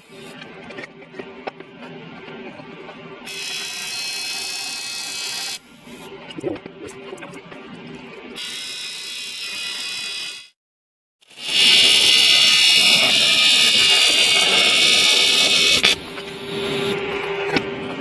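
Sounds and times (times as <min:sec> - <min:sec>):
welding arc buzzing: 0:11.2 - 0:17.0.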